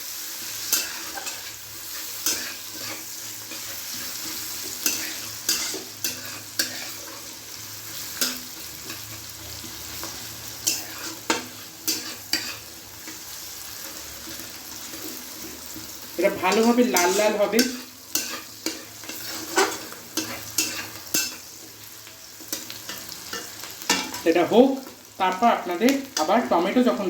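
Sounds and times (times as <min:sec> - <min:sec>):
onions sizzling in oil: 0:00.0 - 0:27.0
stirring scrapes against pan: 0:00.6 - 0:24.3.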